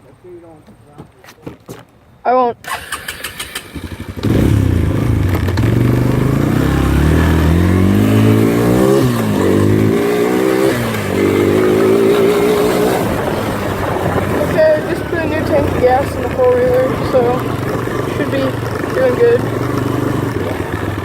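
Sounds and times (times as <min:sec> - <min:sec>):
engine starter cranking: 0:02.6 - 0:04.6
quad engine accelerating: 0:02.7 - 0:21.0.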